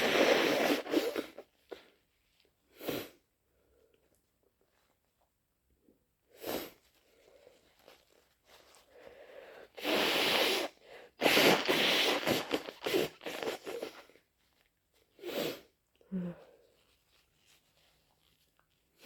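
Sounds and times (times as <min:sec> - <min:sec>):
person sniffing: 0:00.0 - 0:01.4, 0:09.1 - 0:14.1
wet nasal noise: 0:00.0 - 0:01.4, 0:09.8 - 0:14.1
breaths: 0:08.9 - 0:09.8
person sneezing wetly: 0:09.8 - 0:14.1.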